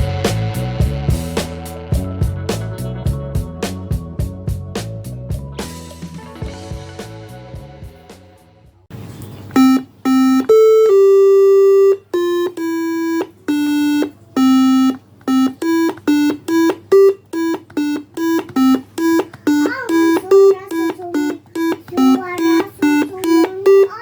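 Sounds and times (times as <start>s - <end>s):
buzzy electronic keyboard notes: 9.6s - 24.0s.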